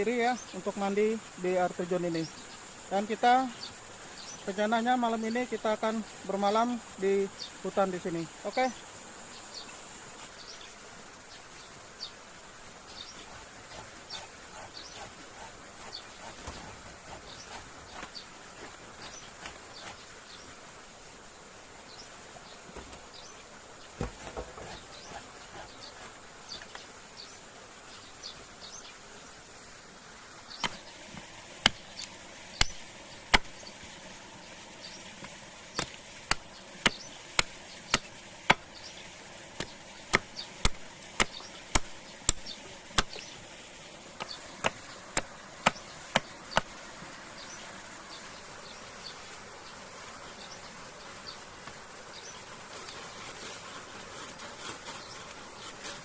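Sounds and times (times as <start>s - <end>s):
sharp knocks on wood: 24.0s - 24.8s.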